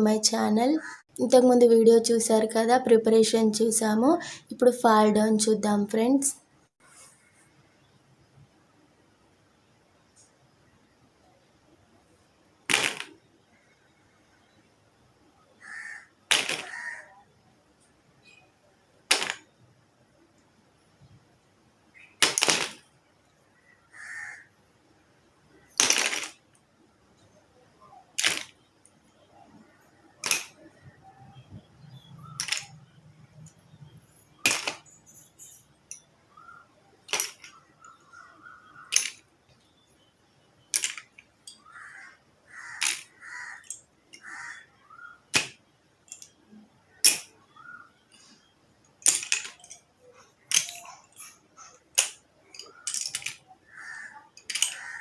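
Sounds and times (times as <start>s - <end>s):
pencils clattering on hard surface: 16.3s - 17.0s, 19.1s - 19.5s, 22.2s - 22.9s, 25.8s - 26.5s, 28.1s - 39.7s, 40.7s - 41.7s, 42.6s - 44.5s, 45.3s - 46.4s, 47.0s - 47.5s, 48.1s - 55.0s.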